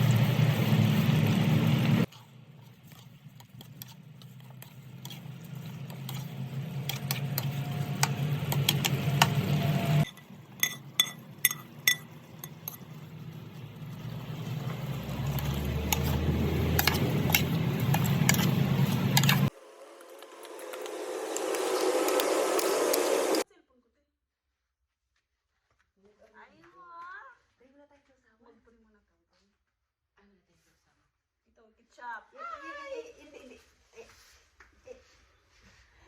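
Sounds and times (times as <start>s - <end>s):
metal utensils clinking on pots: 4.3s - 13.1s, 14.7s - 19.5s.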